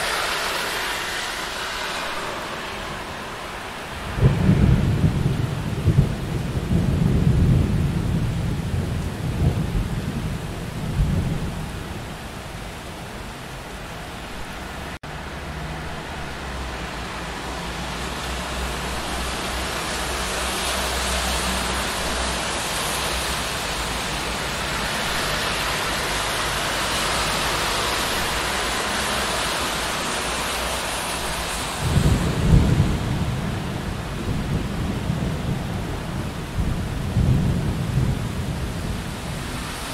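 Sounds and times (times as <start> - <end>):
thunder rumbling: 0.0 - 12.6, 31.1 - 39.9
steady rain: 0.0 - 39.9.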